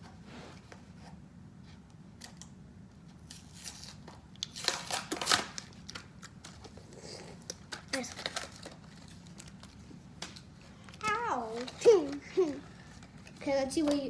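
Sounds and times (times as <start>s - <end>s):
foil wrapper crinkling: 3.3s - 6.6s, 7.6s - 13.4s.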